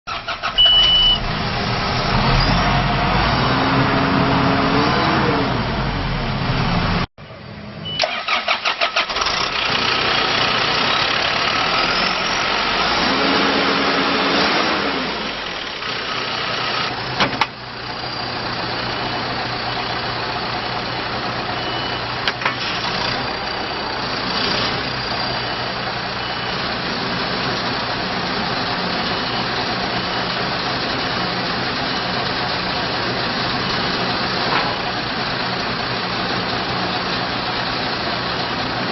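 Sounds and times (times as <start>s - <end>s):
engine cranking: 0.1s - 1.1s, 8.0s - 11.8s
diesel engine running: 0.1s - 38.9s.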